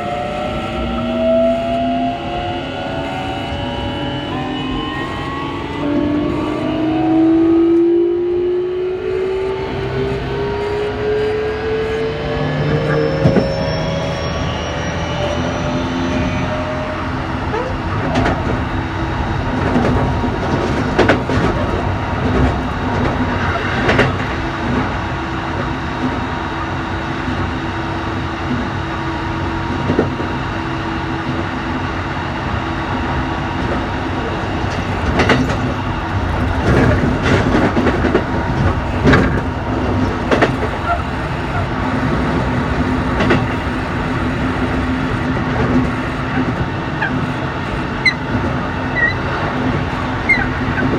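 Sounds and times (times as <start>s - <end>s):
train rumble and motor hum: 0.0s - 50.9s
wheels clacking over rail joints: 17.4s - 24.9s, 33.1s - 50.9s.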